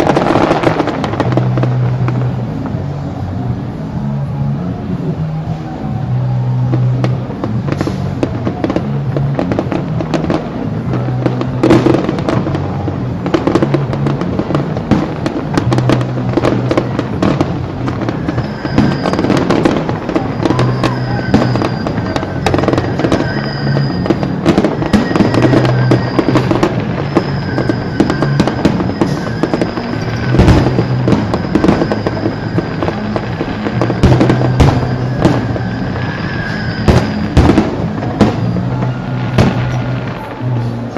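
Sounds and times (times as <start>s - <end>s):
fireworks banging and crackling: 0.0s - 40.9s
music playing: 0.0s - 40.9s.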